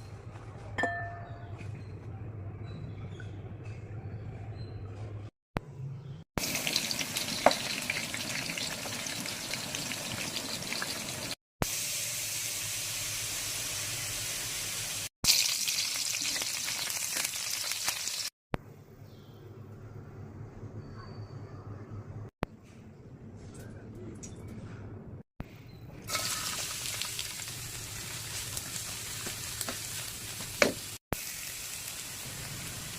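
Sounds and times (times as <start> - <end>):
food sizzling in a pan: 6.4 - 18.3, 26.1 - 32.9.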